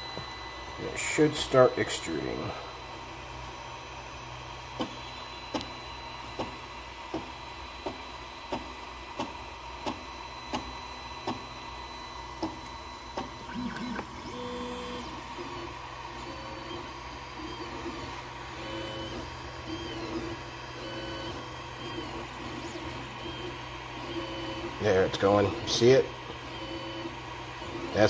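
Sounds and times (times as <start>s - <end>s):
motor whines: 12.6s - 24.9s.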